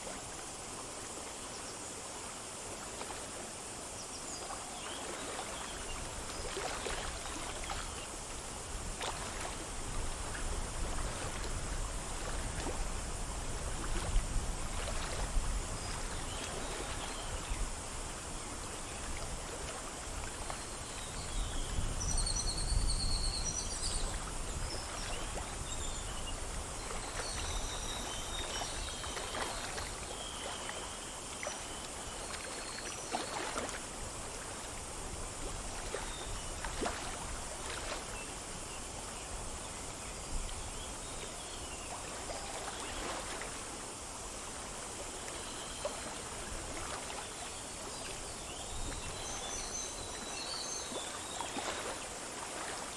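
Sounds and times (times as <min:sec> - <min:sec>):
stream splashing over stones: 0:08.8 - 0:17.4, 0:26.5 - 0:38.6, 0:41.8 - 0:52.9.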